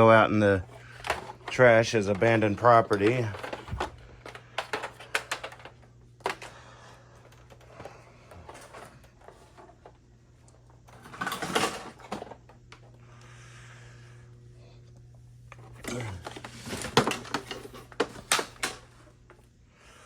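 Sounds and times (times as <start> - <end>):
steady low hum: 0.0 - 20.0
objects clicking and knocking: 0.7 - 10.0, 10.8 - 12.8, 15.5 - 19.4.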